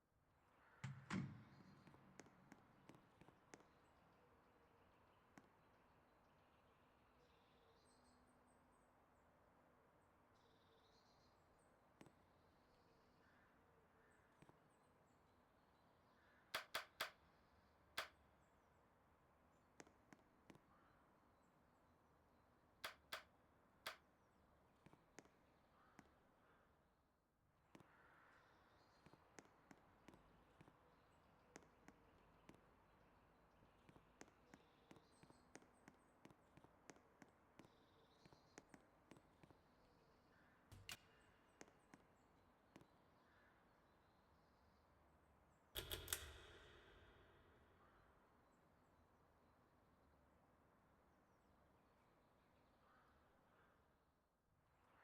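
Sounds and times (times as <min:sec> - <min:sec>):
faint irregular clicks: 0:16.4 - 0:18.4, 0:22.7 - 0:26.4, 0:40.7 - 0:43.1, 0:45.4 - 0:48.8
sharp clicks: 0:16.6 - 0:17.2, 0:22.8 - 0:23.3, 0:40.7 - 0:41.7, 0:45.8 - 0:47.3.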